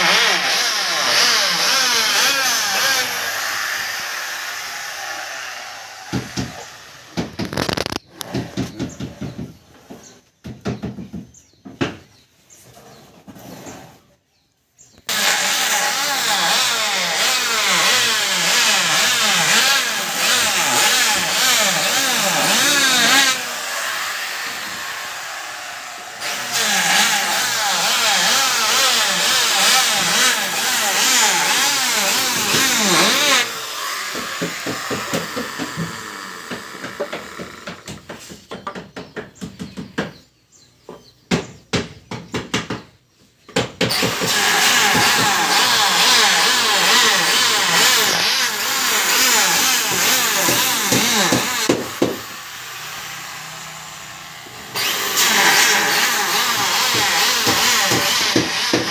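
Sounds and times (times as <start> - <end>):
electric planer cutting wood: 0.0 - 8.3, 15.1 - 38.0, 43.9 - 58.9.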